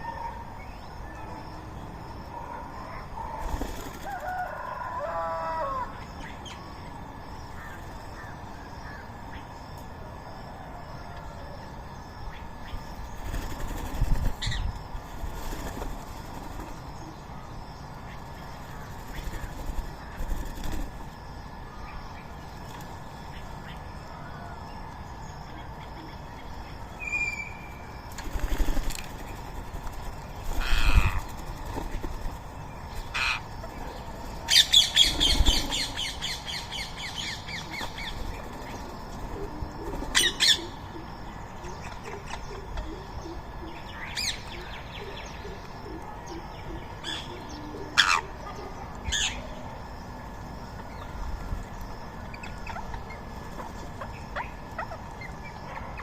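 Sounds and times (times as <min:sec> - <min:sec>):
parakeets screeching: 0:30.5 - 0:31.3, 0:33.0 - 0:38.3, 0:47.9 - 0:48.3
loud chattering bird notes: 0:32.8 - 0:40.8.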